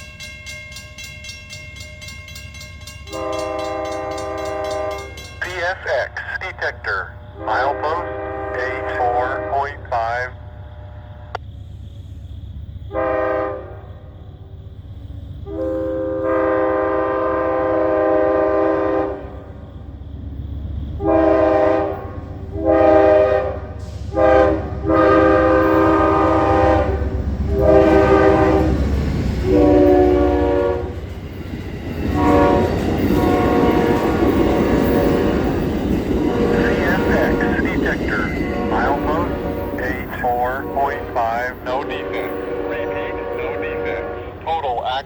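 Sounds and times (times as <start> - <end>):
locomotive rumble: 0.0 - 45.0
train passing close by: 0.0 - 45.0
locomotive air horn blasts: 3.1 - 5.7, 7.4 - 11.4, 12.9 - 13.9, 15.4 - 19.4, 21.0 - 28.8, 29.4 - 31.0, 32.1 - 35.6, 36.2 - 45.0.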